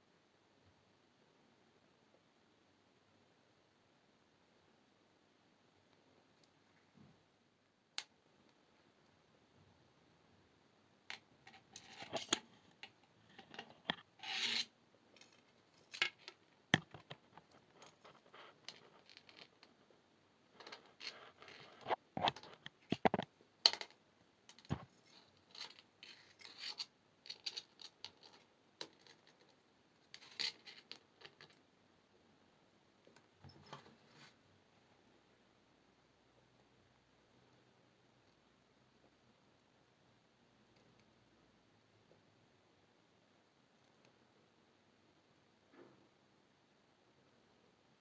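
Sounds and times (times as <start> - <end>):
wire clicking and scratching: 11.1 - 31.6.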